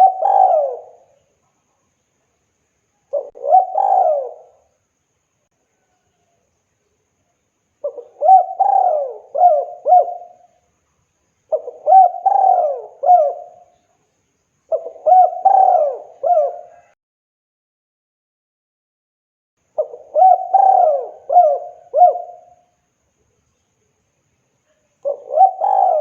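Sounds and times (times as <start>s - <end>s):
dove cooing: 0.0s - 1.2s, 3.1s - 4.7s, 7.8s - 10.5s, 11.5s - 13.7s, 14.7s - 17.0s, 19.8s - 22.6s, 25.0s - 26.0s.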